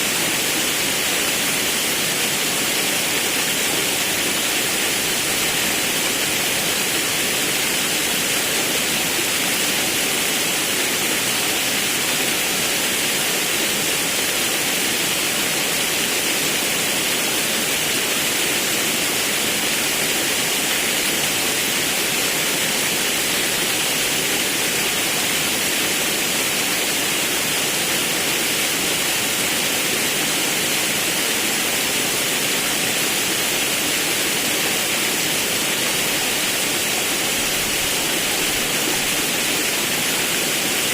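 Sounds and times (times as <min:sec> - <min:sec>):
river rushing over waterfall: 0:00.0 - 0:40.9.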